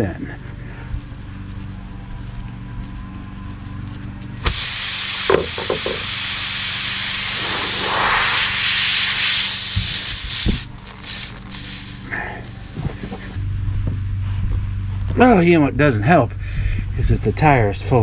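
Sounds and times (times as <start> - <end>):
air hissing out of a tire: 4.4 - 13.4.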